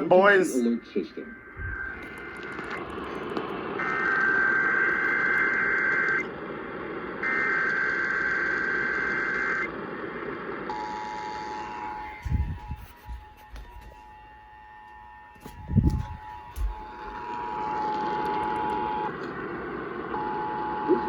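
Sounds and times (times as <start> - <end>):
digital data tone bursts: 0.0 - 6.1
broadcast hiss: 0.0 - 21.0.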